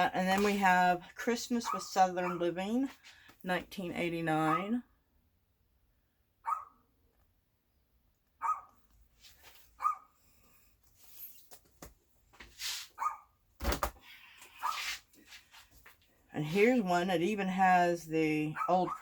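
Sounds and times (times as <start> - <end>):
dog barking: 1.7 - 2.4, 4.5 - 4.7, 6.4 - 6.8, 8.4 - 8.8, 9.8 - 10.2, 13.0 - 13.3, 18.6 - 19.0.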